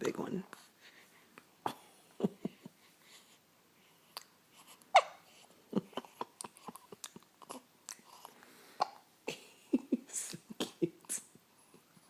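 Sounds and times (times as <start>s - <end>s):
baby hiccuping: 4.9s - 5.3s, 5.9s - 9.1s.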